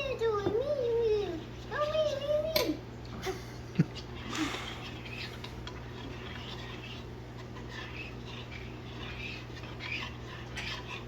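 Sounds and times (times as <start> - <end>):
steady low hum: 0.0 - 11.0
spoon scraping in bowl: 4.0 - 11.0.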